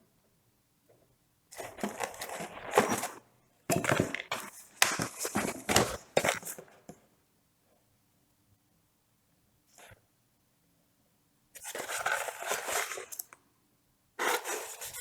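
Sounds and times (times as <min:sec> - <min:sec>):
packaging rustling and clattering: 0:01.6 - 0:06.9.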